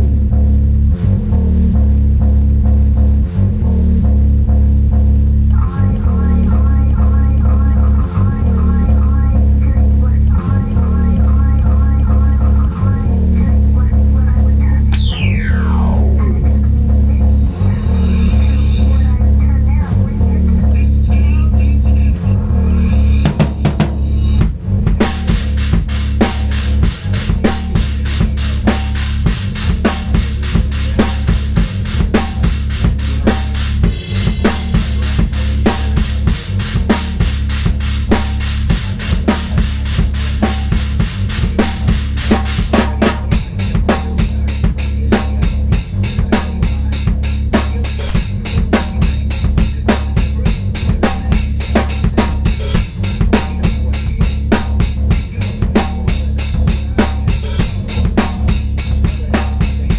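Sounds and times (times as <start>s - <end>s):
backing track with low bass: 0.0s - 59.9s
drum kit groove: 14.9s - 15.5s, 23.2s - 59.9s.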